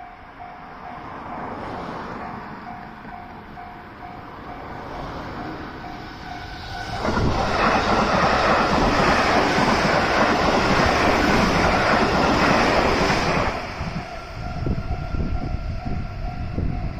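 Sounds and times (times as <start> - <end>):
crossing warning bell ringing: 0.0 - 16.9
train rushing past: 0.0 - 16.9
wheels clattering over rail joints: 4.9 - 13.7.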